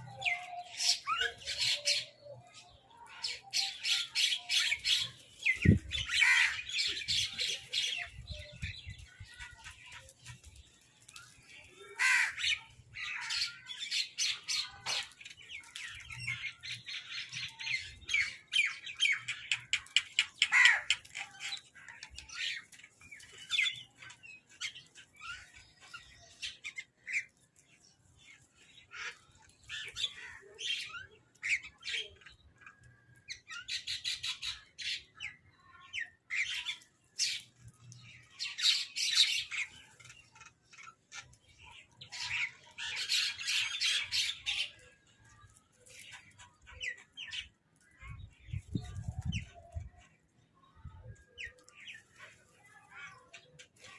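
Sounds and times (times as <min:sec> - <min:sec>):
crows calling and squawking: 0:06.0 - 0:07.3, 0:11.7 - 0:14.0, 0:20.3 - 0:22.6, 0:28.9 - 0:30.8.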